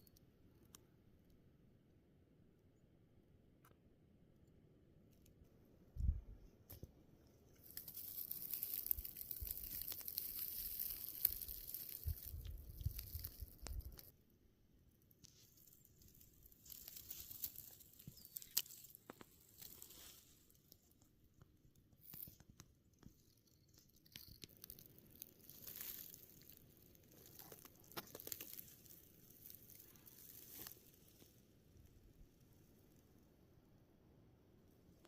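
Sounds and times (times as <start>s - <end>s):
close rustling and crackling: 6.7s - 14.1s, 15.2s - 21.2s, 21.8s - 31.8s.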